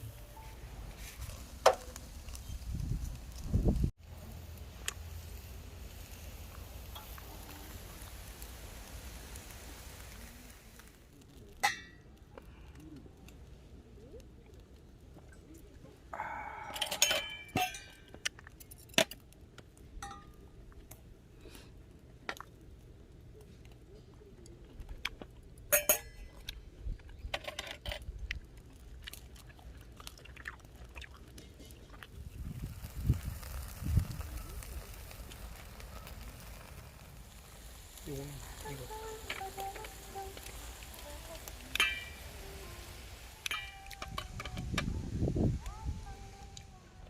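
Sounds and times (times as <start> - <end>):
small hard objects clinking: 41.5 - 42.4, 43.3 - 44.9.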